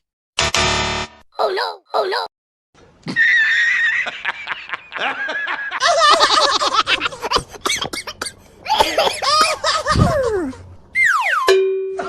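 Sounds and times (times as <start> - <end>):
high-pitched cartoon laughing voice: 1.4 - 2.3, 8.7 - 11.5.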